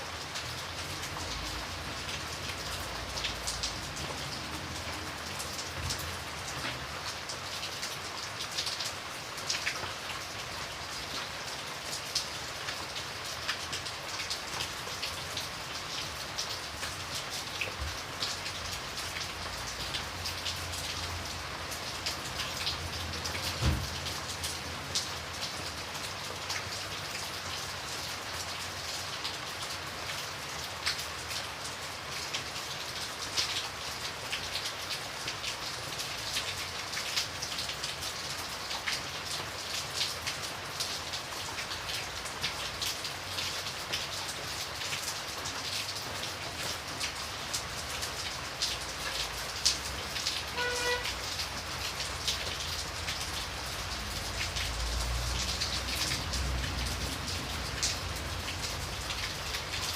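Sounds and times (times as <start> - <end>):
steady rain falling: 0.0 - 59.9
low thump: 23.6 - 23.9.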